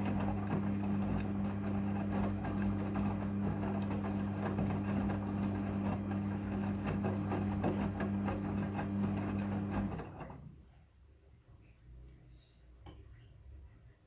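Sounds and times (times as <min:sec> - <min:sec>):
washing machine humming and clattering: 0:00.0 - 0:10.5.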